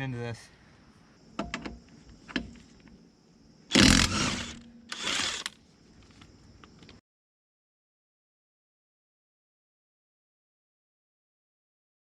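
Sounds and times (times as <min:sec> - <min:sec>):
impact wrench loosening lug nuts: 0:03.7 - 0:05.6.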